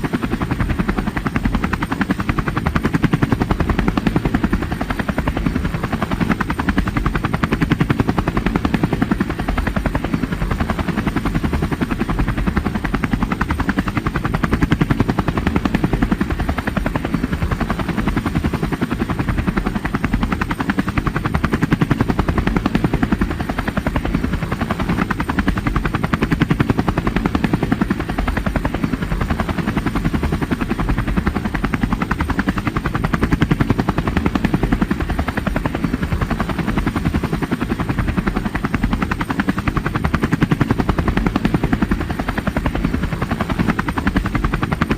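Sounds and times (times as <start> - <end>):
helicopter engine drone: 0.0 - 44.9
helicopter rotor chopping: 0.0 - 44.9.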